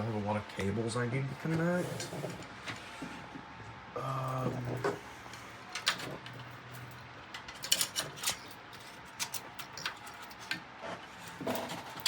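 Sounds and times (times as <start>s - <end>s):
computer parts clicking and tapping: 7.3s - 10.7s.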